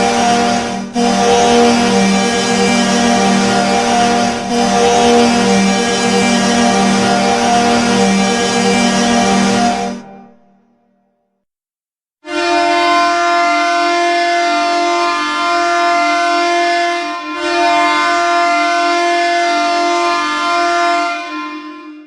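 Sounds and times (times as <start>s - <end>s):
low goal horn blast: 0.0s - 10.8s, 12.2s - 22.0s.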